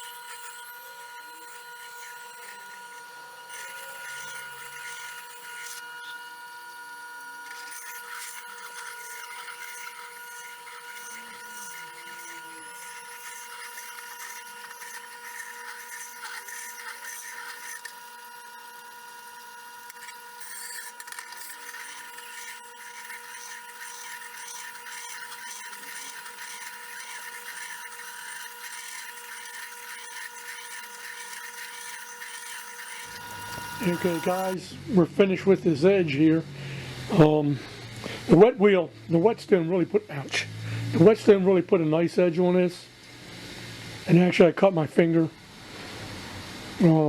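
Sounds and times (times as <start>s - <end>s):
blade scraping on whetstone: 0.0s - 6.4s, 7.2s - 34.6s
steady background hum: 0.0s - 47.0s.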